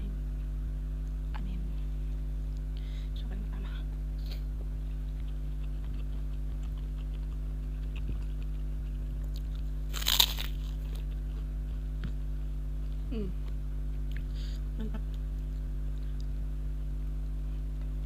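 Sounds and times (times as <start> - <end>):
low electrical hum: 0.0 - 18.0
crunch of biting fried food: 4.3 - 12.2
faint chewing clicks: 4.3 - 12.2, 15.1 - 16.4.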